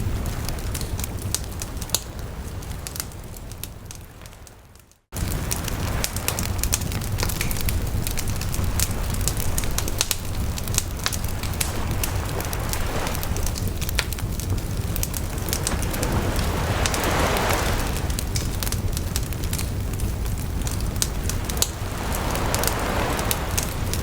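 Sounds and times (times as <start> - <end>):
campfire crackling and popping: 0.0 - 24.0
waves washing on shore: 4.0 - 24.0.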